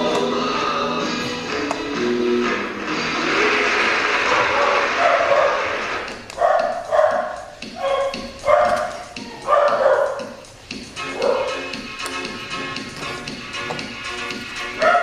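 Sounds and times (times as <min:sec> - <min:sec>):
dog barking: 0:04.2 - 0:10.4, 0:11.0 - 0:11.7, 0:14.8 - 0:15.0.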